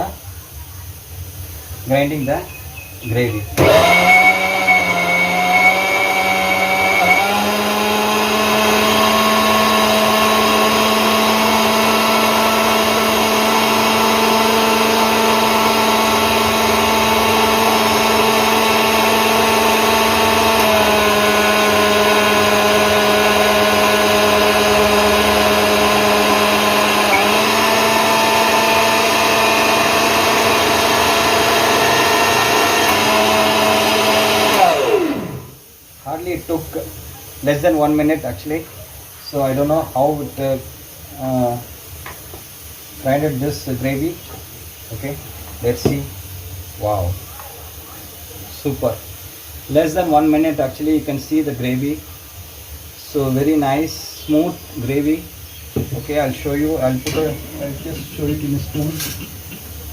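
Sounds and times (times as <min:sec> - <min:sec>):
mixer grinder motor running: 0:03.6 - 0:35.6, 0:55.8 - 0:59.9.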